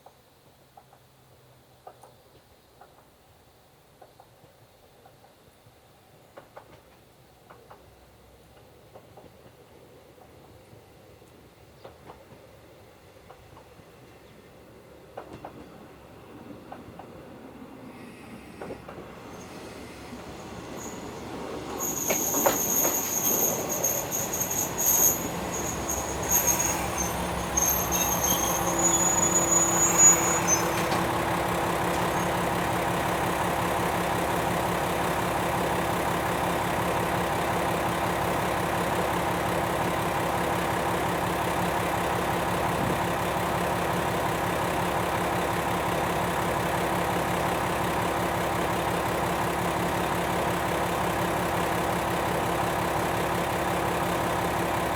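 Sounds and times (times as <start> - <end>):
train wheels and brakes squealing: 17.8 - 32.8
diesel engine idling: 31.0 - 54.9.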